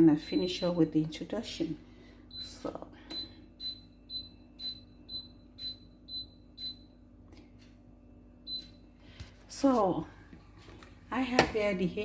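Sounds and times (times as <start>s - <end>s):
cooktop control beeps: 2.3s - 7.0s, 8.3s - 8.9s.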